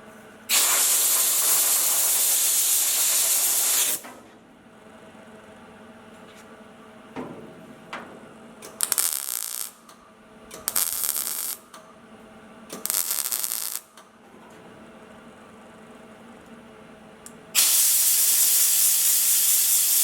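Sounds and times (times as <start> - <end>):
welding hiss: 0.5 - 4.0, 8.6 - 9.8, 10.6 - 11.6, 12.8 - 13.9, 17.6 - 20.0.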